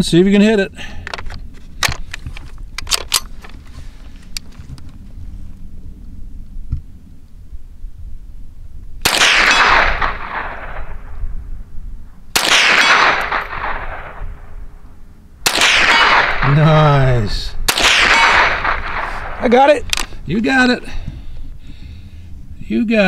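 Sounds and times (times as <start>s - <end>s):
low wind rumble: 0.0s - 23.0s
rifle shots echoing: 9.0s - 11.4s, 12.3s - 20.3s.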